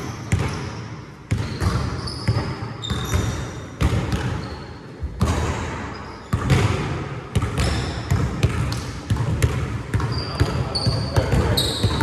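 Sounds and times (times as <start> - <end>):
sneaker squeaks: 0.0 - 6.7, 7.4 - 8.2, 9.9 - 12.0
basketball bouncing on gym floor: 0.0 - 12.0.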